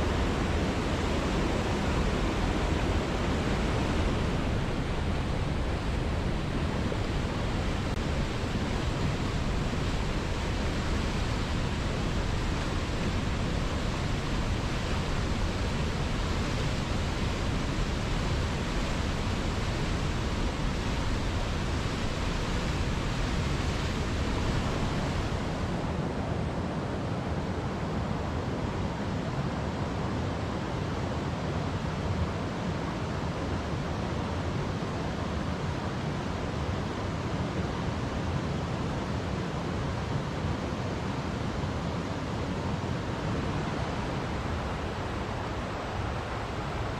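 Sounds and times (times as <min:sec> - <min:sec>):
waterfall rushing: 0:00.0 - 0:25.9, 0:42.2 - 0:46.9.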